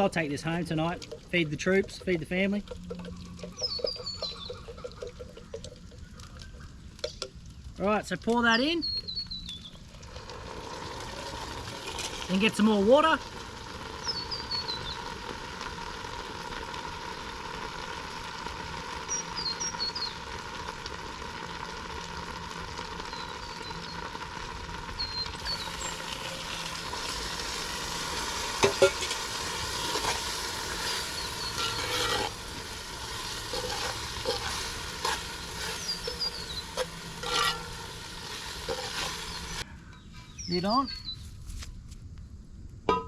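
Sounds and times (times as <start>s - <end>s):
stew sizzling in a pot: 0.0s - 41.2s
small birds chirping: 1.4s - 9.8s, 14.0s - 15.1s, 19.0s - 20.3s, 23.0s - 24.2s, 24.9s - 26.7s, 29.7s - 41.4s.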